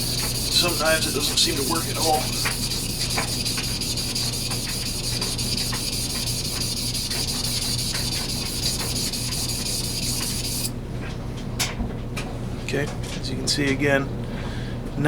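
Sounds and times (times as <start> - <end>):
knife grinding on water stone: 0.0 - 10.7.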